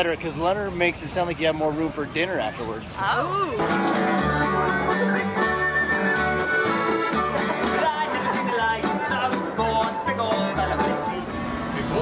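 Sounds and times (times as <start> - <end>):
sustained melody notes: 3.6 - 11.7.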